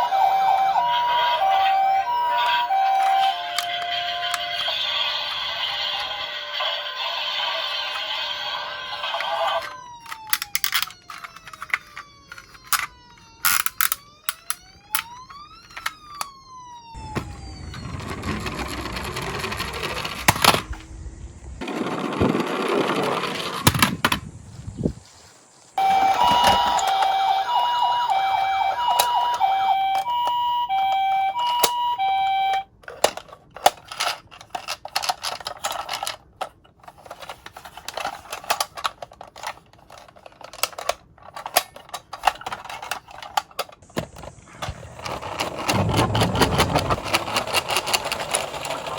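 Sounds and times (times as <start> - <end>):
toy siren two-tone: 0.0 - 19.6, 25.8 - 33.3
sliding whistle-like tones: 0.0 - 20.0, 25.7 - 32.7, 43.9 - 48.9
plastic clicks: 9.6 - 16.4, 28.1 - 48.9
rumbling rattle: 44.1 - 48.9.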